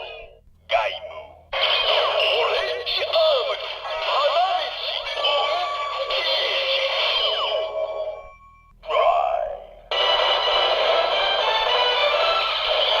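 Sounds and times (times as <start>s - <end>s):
toy belt electronic music: 1.6s - 8.6s, 9.9s - 13.0s.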